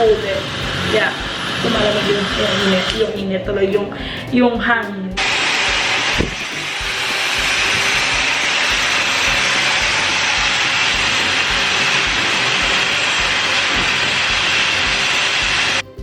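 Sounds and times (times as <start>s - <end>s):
hair dryer blowing: 5.2s - 15.8s.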